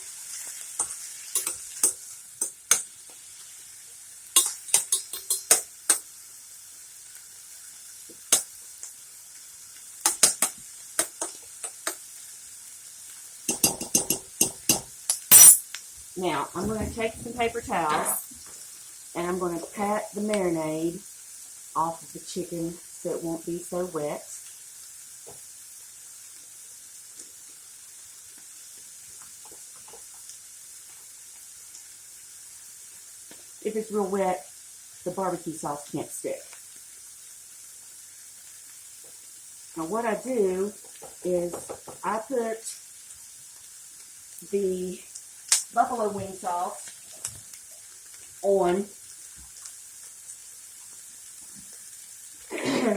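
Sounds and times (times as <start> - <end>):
onions sizzling in a pan: 0.0 - 52.9
utensil scraping and stirring: 0.3 - 2.8.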